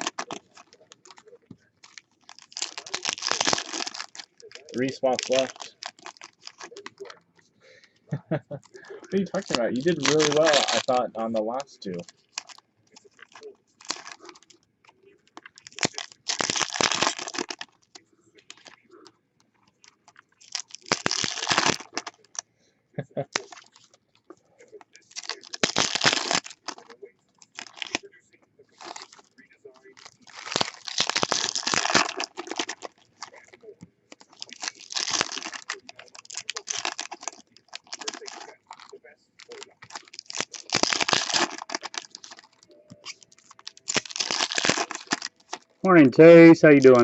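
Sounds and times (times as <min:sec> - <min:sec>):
foil wrapper crinkling: 0:00.0 - 0:08.0, 0:08.6 - 0:22.4, 0:23.3 - 0:28.1, 0:28.7 - 0:47.0.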